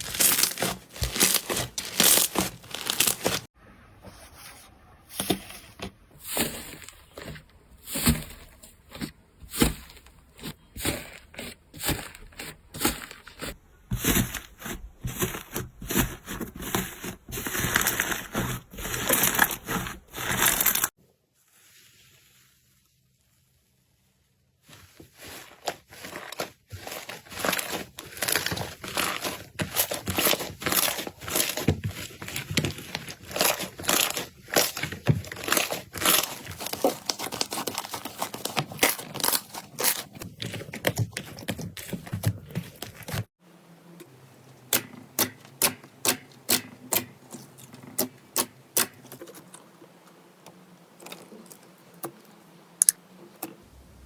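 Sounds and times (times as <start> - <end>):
slime crackling and popping: 0.0 - 3.4, 27.3 - 40.1.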